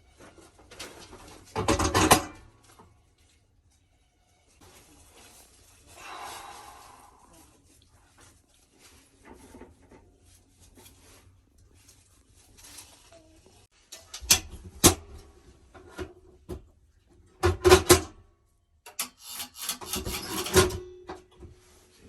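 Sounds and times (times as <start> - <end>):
water pump rasping and grinding: 18.9 - 20.8.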